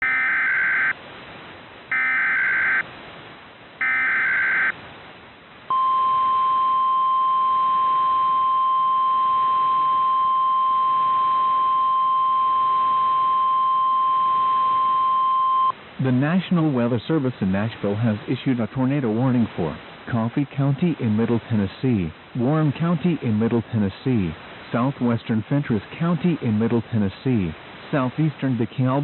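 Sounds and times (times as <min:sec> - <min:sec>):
steady warning alarm tone: 0:00.0 - 0:01.0, 0:01.9 - 0:02.8, 0:03.8 - 0:04.8.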